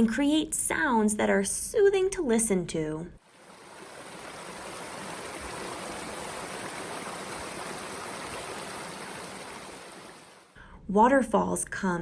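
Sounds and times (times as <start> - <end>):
waterfall rushing: 3.3 - 10.4.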